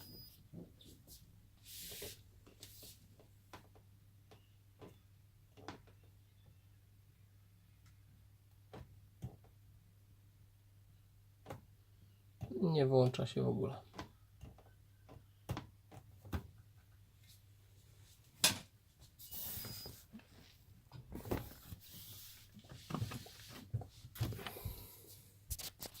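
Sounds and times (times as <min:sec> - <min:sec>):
rustling of hands handling wiring: 0:18.1 - 0:26.0.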